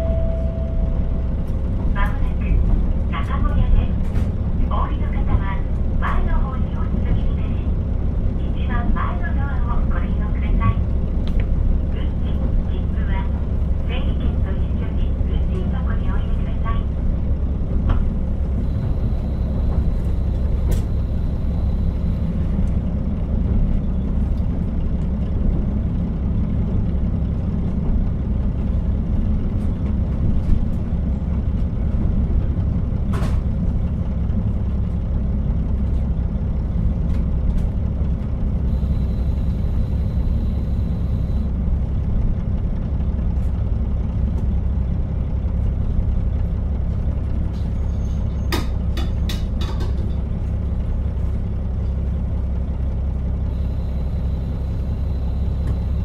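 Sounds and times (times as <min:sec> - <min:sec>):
faint high tone: 0:00.0 - 0:01.0
diesel railcar engine drone: 0:00.0 - 0:56.0.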